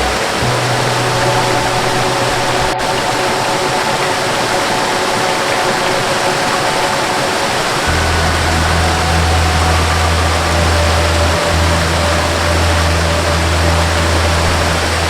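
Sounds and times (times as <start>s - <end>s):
soft melody of held notes: 0.0s - 15.0s
waterfall rushing: 0.0s - 15.0s
deep bass note: 7.8s - 15.0s.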